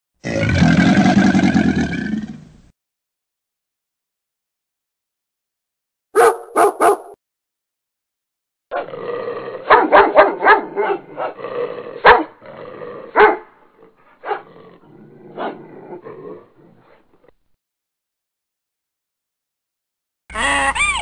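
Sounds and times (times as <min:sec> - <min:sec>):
dog barking: 0:06.2 - 0:07.2, 0:09.6 - 0:11.4, 0:12.0 - 0:12.4, 0:13.2 - 0:13.5, 0:14.2 - 0:14.5, 0:15.4 - 0:15.6.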